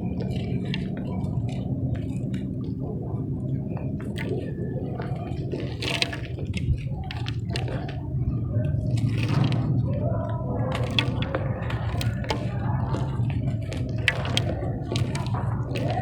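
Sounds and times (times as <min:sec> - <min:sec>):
dry objects crushed by hand: 0:08.8 - 0:16.0.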